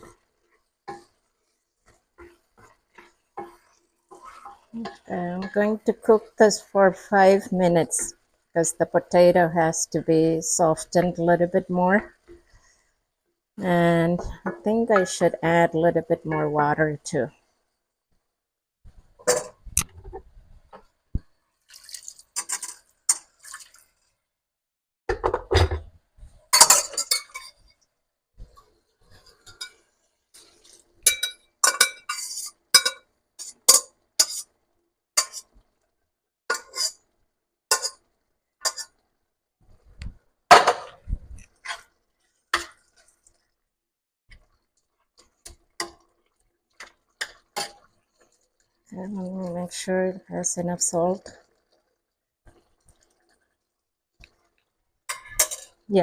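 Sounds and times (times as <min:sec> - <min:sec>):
utensils clinking against a pot: 0:19.2 - 0:19.6, 0:21.9 - 0:23.7, 0:26.5 - 0:27.7, 0:30.4 - 0:34.4, 0:35.2 - 0:35.5, 0:36.5 - 0:37.0, 0:37.7 - 0:38.0, 0:38.6 - 0:39.0, 0:46.8 - 0:47.9, 0:55.1 - 0:55.8.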